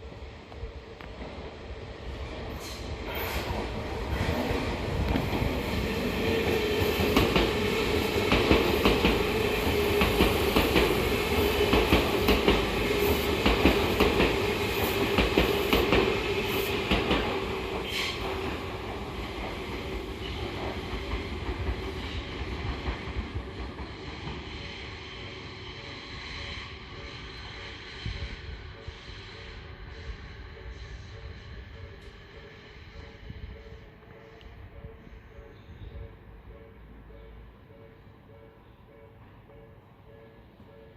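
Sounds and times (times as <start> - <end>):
steady train hum: 0.0 - 40.9
train wheels clacking over rail joints: 16.8 - 24.4.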